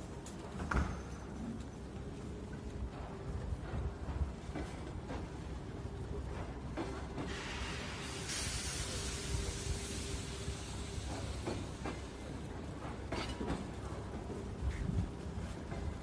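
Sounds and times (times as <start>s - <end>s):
train rolling rumble: 0.0s - 16.0s
wheels clacking over rail joints: 10.3s - 14.4s.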